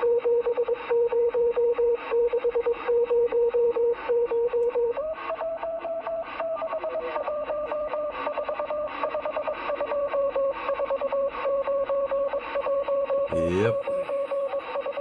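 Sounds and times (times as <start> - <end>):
radio band noise hiss: 13.3 - 15.0.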